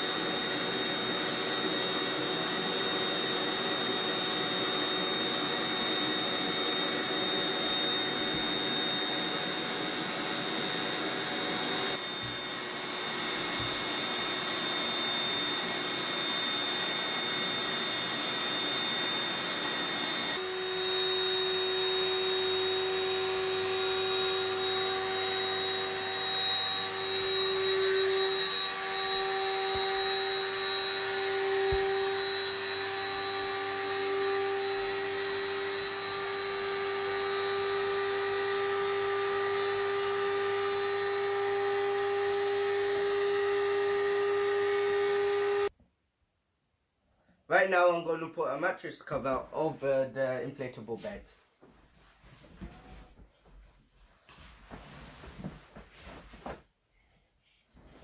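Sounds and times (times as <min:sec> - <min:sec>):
electric air pump humming: 0:00.0 - 0:45.7.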